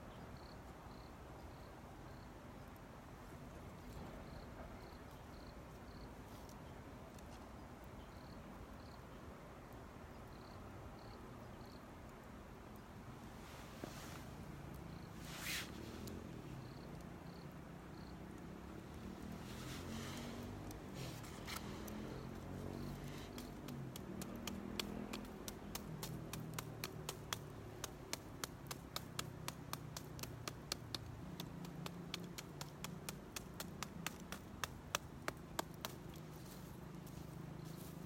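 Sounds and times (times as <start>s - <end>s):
campfire popping and snapping: 18.2s - 19.5s, 20.2s - 37.0s.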